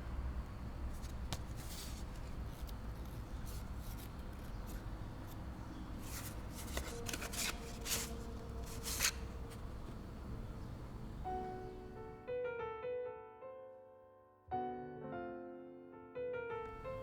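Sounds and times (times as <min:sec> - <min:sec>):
packaging rustling and crinkling: 0:06.0 - 0:09.6.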